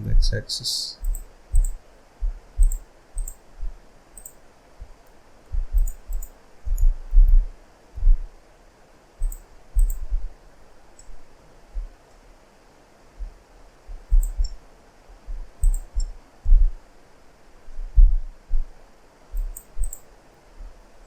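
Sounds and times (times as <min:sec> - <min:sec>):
keyboard and mouse clicks: 0:01.0 - 0:01.8, 0:02.6 - 0:03.4, 0:04.2 - 0:04.4, 0:05.7 - 0:07.4, 0:09.2 - 0:10.1, 0:14.0 - 0:14.6, 0:15.6 - 0:16.2, 0:19.4 - 0:20.1.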